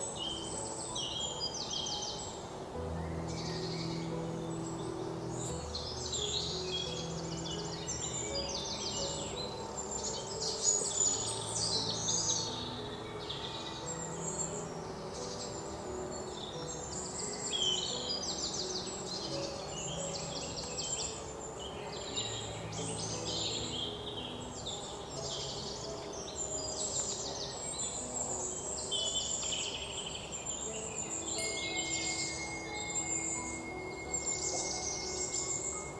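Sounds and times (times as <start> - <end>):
songbirds trilling and chirping: 0.0 - 35.9.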